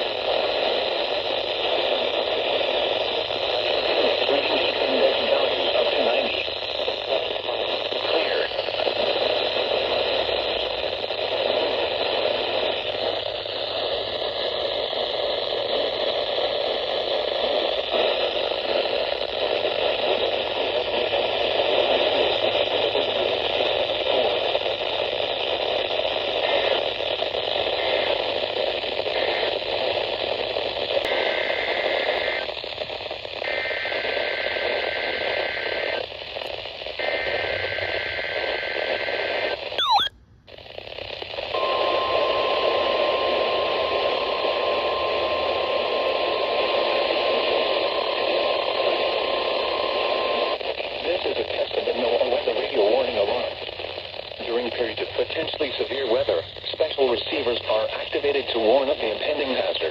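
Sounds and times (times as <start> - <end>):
radio static hiss: 0.0 - 59.9
high data tone bursts: 39.8 - 40.2.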